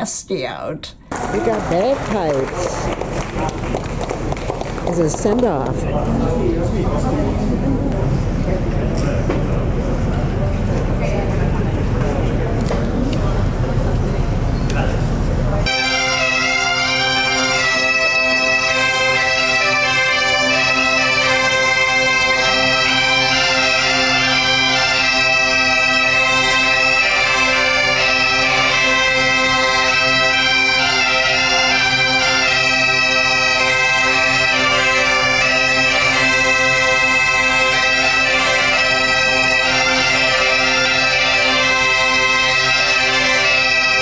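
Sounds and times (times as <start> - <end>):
bagpipes playing a tune: 15.7 - 44.0.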